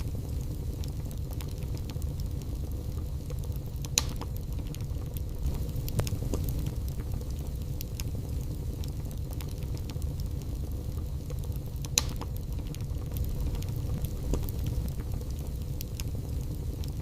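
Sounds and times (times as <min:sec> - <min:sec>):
fire crackling: 0:00.0 - 0:17.0
fire popping: 0:00.0 - 0:17.0
fire rumbling: 0:00.0 - 0:17.0.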